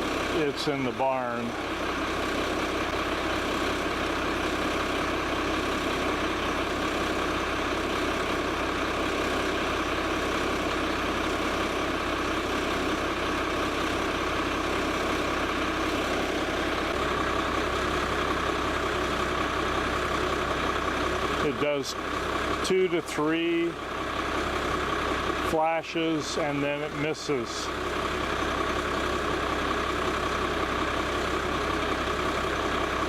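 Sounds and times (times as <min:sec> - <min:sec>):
engine idling: 0:00.0 - 0:33.0.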